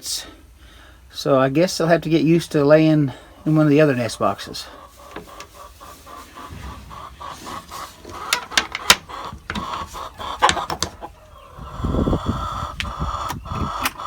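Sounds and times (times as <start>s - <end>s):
hens clucking: 1.5s - 14.0s
low rumble: 6.4s - 7.7s.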